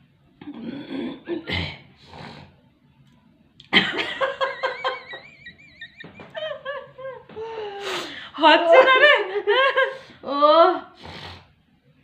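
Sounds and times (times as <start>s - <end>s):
woman laughing: 3.7s - 7.8s, 8.5s - 10.0s
nose huffs and sniffs: 11.0s - 11.5s.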